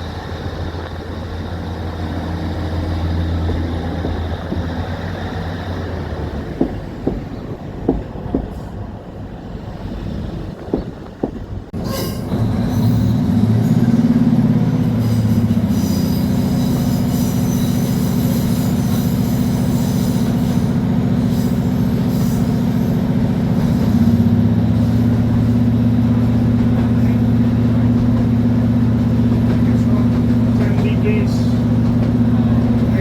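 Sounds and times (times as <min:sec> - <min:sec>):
diesel train engine drone: 0:00.0 - 0:33.0
high-pitched wheel squeal: 0:11.8 - 0:13.8, 0:14.9 - 0:24.3.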